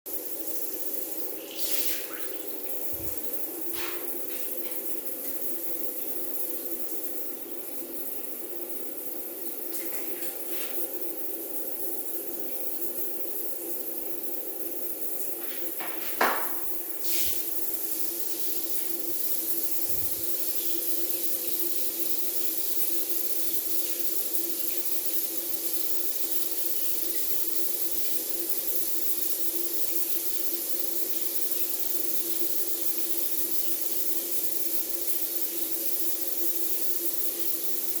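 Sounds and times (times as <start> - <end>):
shower head spraying water: 17.0 - 22.1.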